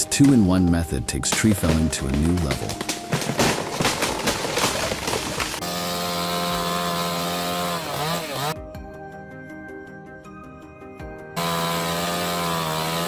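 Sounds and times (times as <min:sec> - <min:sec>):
chainsaw cutting: 0:02.3 - 0:08.6, 0:11.4 - 0:13.0.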